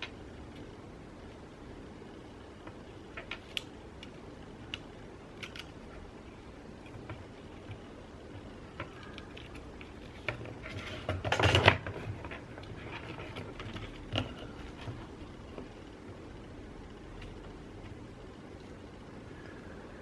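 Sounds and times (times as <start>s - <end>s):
rustling scrape: 10.0s - 15.2s.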